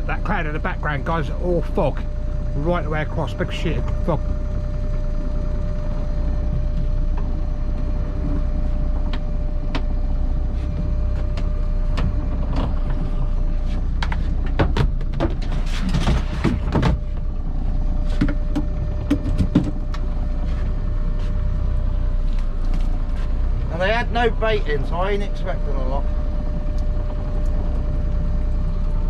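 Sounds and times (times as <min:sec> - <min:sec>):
boat engine rumbling: 0:00.0 - 0:29.0
knocks and clatter: 0:10.8 - 0:20.1.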